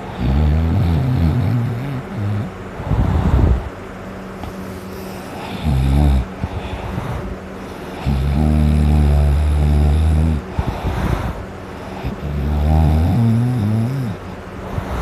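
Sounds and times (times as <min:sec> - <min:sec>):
loud deep snoring: 0:00.0 - 0:03.6, 0:04.4 - 0:15.0
breathy out-breath: 0:10.5 - 0:12.2.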